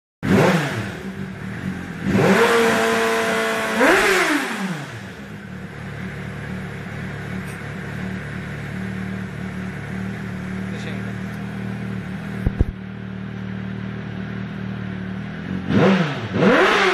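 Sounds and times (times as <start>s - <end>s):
motorcycle engine revving: 0.2s - 16.9s
motorcycle engine idling: 0.9s - 2.2s, 4.8s - 15.7s.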